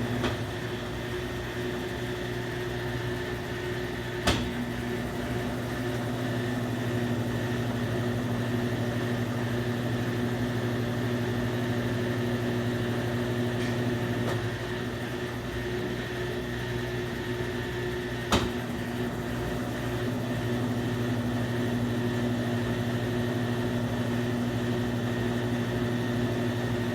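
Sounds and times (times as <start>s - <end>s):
washing machine spinning: 0.0s - 26.9s.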